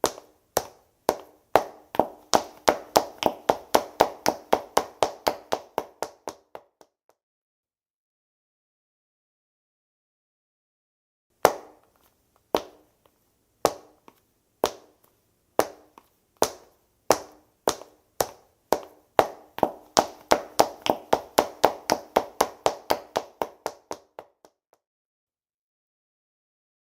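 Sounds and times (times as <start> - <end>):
dress shoes heel clicks on hard floor: 0.0 - 6.9, 11.4 - 24.5.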